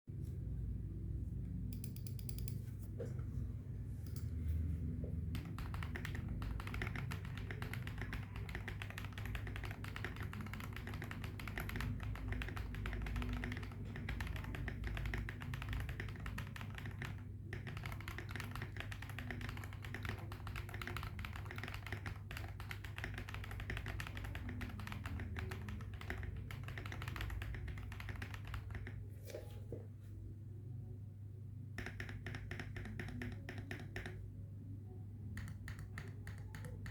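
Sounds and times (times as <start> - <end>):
mechanical keyboard typing: 1.7 - 2.6, 5.2 - 29.1, 31.8 - 34.3, 35.3 - 36.9.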